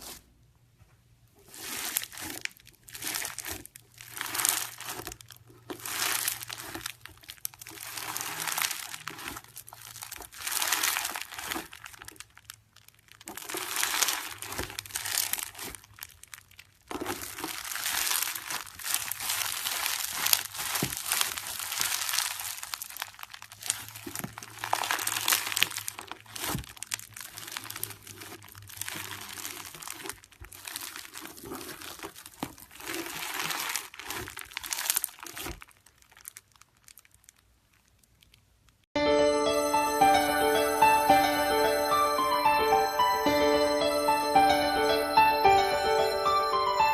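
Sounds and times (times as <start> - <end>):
slime crackling and crinkling: 1.4 - 38.8.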